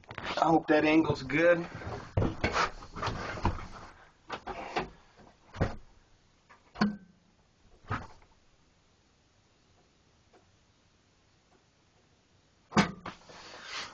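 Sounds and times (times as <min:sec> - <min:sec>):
irregular knocks and clunks: 0:01.7 - 0:05.9.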